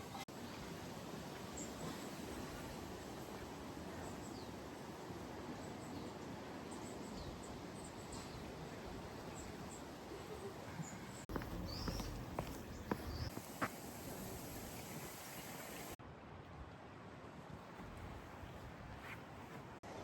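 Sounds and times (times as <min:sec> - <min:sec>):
background hiss: 0:00.0 - 0:16.0
faint high bird chirps: 0:10.4 - 0:13.3.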